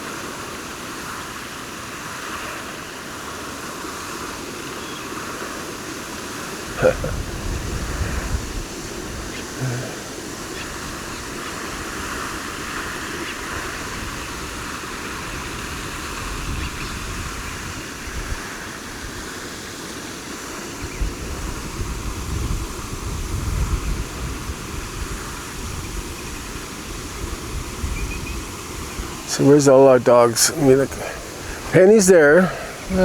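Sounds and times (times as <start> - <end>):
wind buffeting microphone: 6.6 - 19.1, 20.8 - 29.6, 30.6 - 33.0
steady rushing outdoor noise: 28.6 - 33.0.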